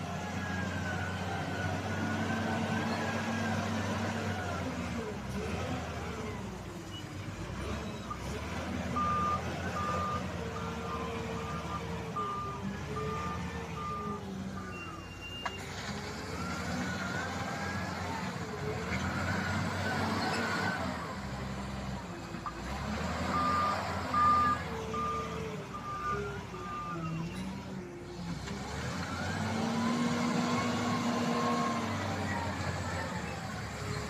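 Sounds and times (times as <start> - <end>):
diesel excavator engines running: 0.0 - 34.0.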